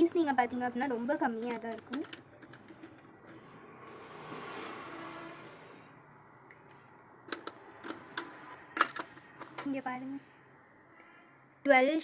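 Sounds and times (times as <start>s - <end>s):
vehicle passing by: 3.3s - 6.3s.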